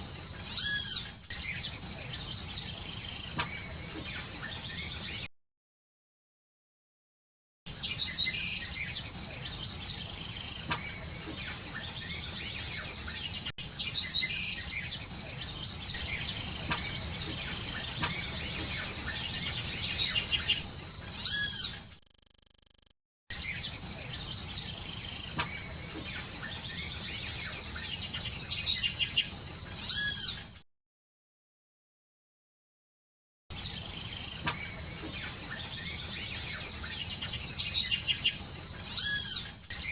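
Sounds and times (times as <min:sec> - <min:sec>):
parrots chirping and whistling: 0:15.9 - 0:21.8
parrot squawk: 0:21.2 - 0:21.8.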